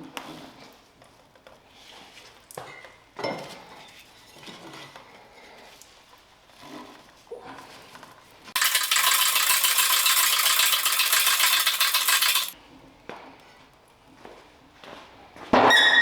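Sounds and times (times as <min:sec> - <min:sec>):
loud dense rattling: 0:08.6 - 0:12.6
metal clinking: 0:08.6 - 0:12.6.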